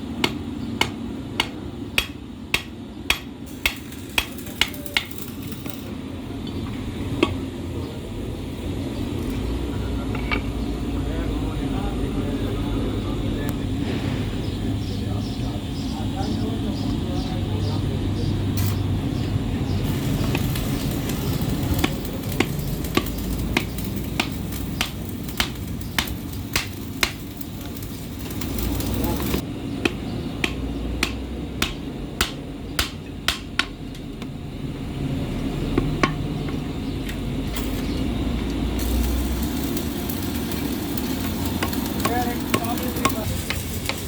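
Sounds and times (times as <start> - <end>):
steady low rumble: 3.4 - 33.6.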